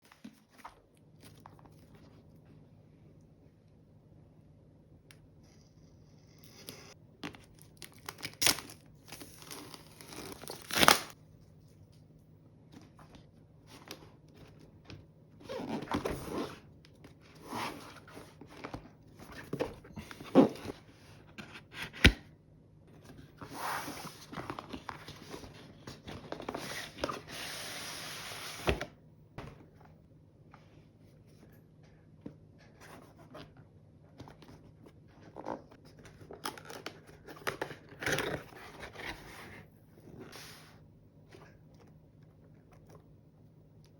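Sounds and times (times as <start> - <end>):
packaging tearing and crinkling: 7.3 - 11.2.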